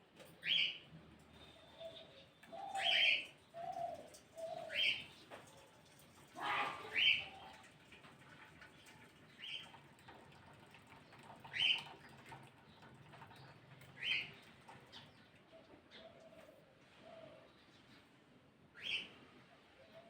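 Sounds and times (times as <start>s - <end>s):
faint background noise: 0.0s - 20.0s.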